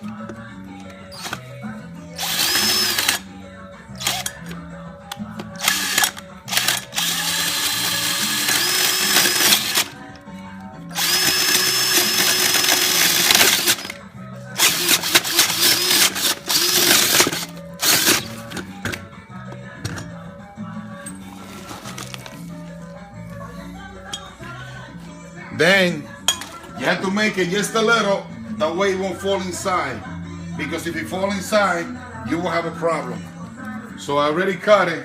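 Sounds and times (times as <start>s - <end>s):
background music: 0.0s - 35.0s
power drill cutting into pipe: 2.2s - 3.2s, 4.0s - 4.4s, 5.6s - 10.0s, 10.9s - 14.0s, 14.6s - 18.6s.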